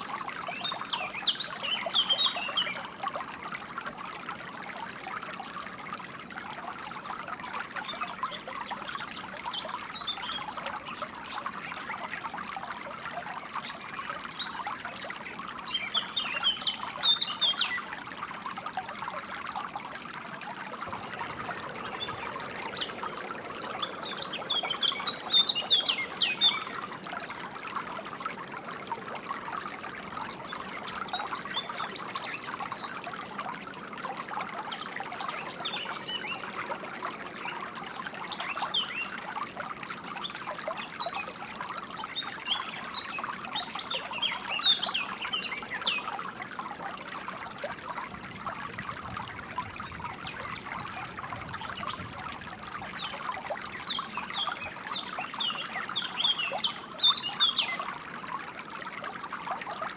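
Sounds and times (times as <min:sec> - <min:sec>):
stream trickling over stones: 0:00.0 - 0:59.9
birds chirping: 0:20.8 - 0:26.8.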